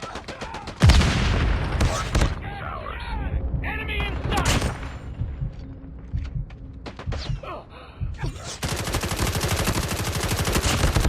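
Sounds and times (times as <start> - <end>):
video game gunfire: 8.4 - 11.0
rapid automatic fire: 8.6 - 11.0.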